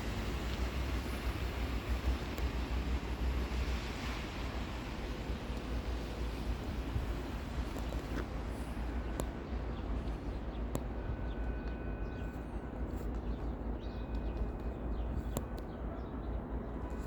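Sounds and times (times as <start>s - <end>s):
faint sharp clicks: 10.7s - 10.9s.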